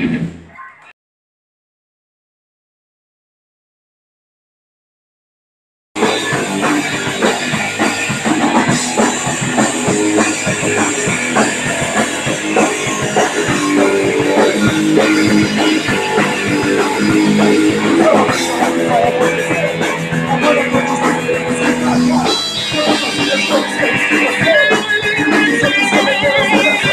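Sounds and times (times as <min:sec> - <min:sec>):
live punk rock band: 0:00.0 - 0:00.4, 0:06.0 - 0:26.9
pounding drum kit: 0:06.0 - 0:26.9.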